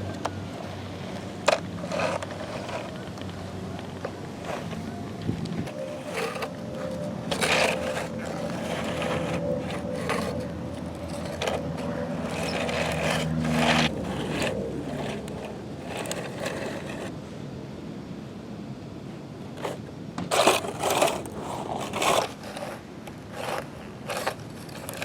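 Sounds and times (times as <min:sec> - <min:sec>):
motor hum: 0:00.0 - 0:17.1
toy trucks scraping through dirt: 0:01.2 - 0:03.2, 0:04.0 - 0:04.9, 0:05.6 - 0:17.1, 0:19.6 - 0:25.0.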